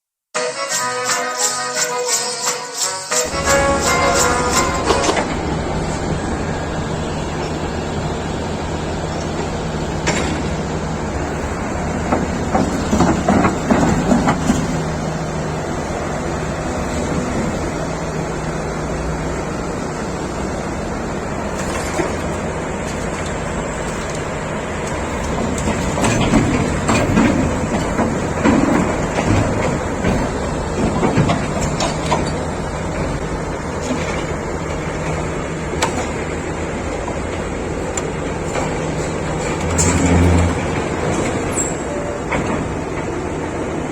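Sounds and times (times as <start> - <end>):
excavator diesel engine running: 3.1 - 43.9
metallic clanks and knocks: 9.1 - 14.9, 21.5 - 36.4, 37.1 - 43.2.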